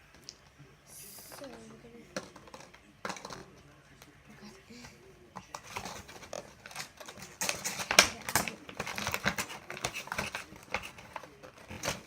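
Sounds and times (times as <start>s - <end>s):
plastic pieces clicking and rustling: 1.3s - 3.5s, 4.8s - 12.0s.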